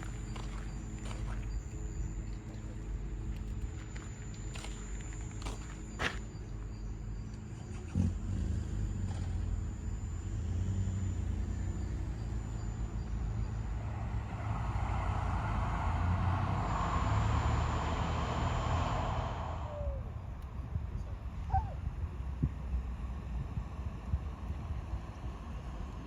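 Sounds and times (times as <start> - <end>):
car passing: 10.6 - 20.3.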